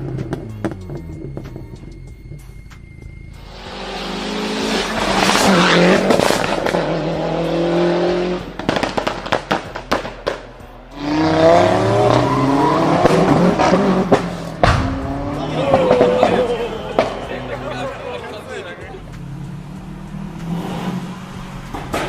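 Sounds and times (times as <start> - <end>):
car engine revving: 3.2 - 22.0
exhaust pops and crackles: 8.5 - 10.7.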